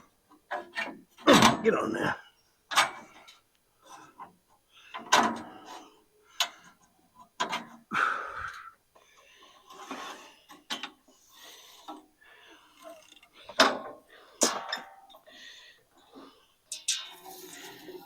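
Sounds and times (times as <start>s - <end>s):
metal clanks and rattles: 16.7s - 18.0s.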